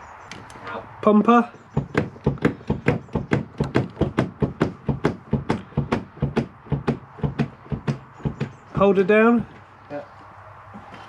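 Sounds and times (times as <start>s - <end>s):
rapid sharp knocks: 1.7s - 9.0s.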